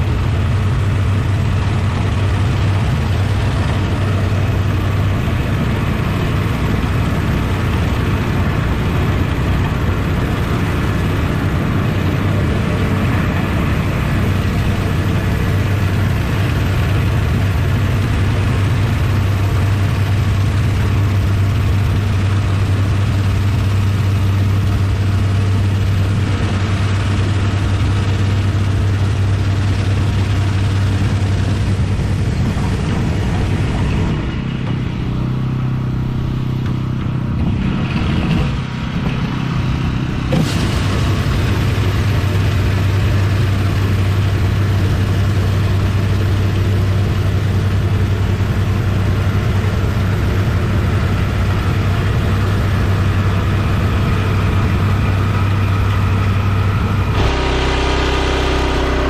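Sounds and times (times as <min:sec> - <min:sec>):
pressure washer engine humming: 0:00.0 - 0:59.0
water jet hissing on paving: 0:40.2 - 0:59.0.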